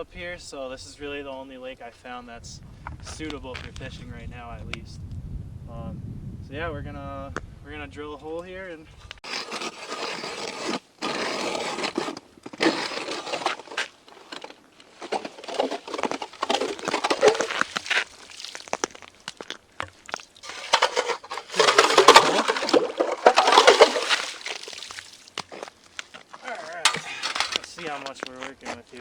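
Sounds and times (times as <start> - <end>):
ice auger crunching through ice: 9.2 - 29.0.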